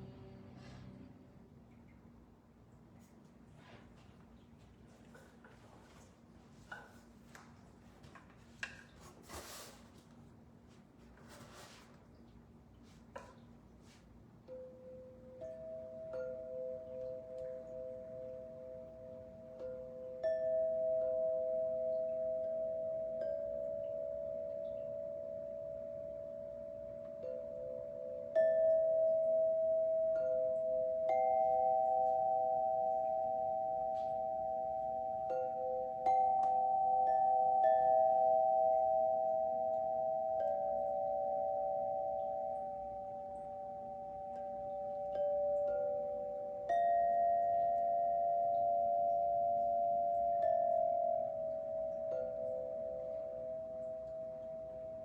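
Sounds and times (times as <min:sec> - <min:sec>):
faint steady hum: 0:00.0 - 0:55.0.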